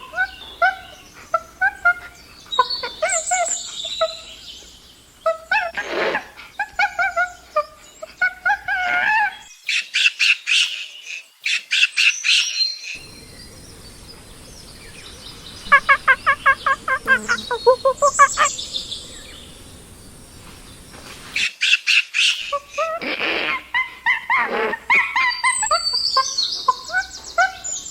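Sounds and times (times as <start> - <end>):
chimpanzee squeaks and cries: 5.3 - 9.5, 22.2 - 27.7
chimpanzee hoots: 15.7 - 18.6, 22.4 - 27.7.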